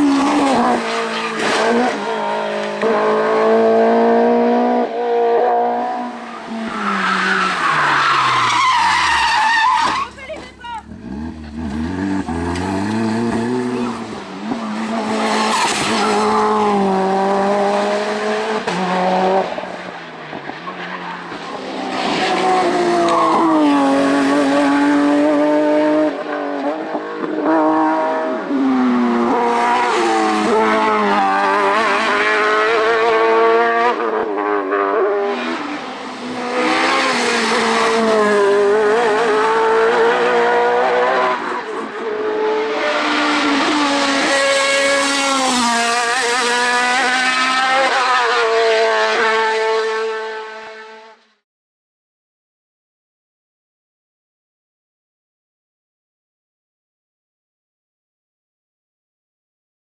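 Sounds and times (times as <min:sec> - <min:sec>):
racing car engines revving: 0:00.0 - 0:51.0
cars accelerating past: 0:10.8 - 0:50.8.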